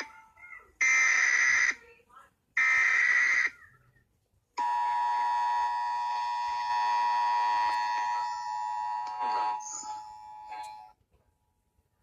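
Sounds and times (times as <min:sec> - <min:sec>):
two-tone alarm signal: 0:04.6 - 0:10.9.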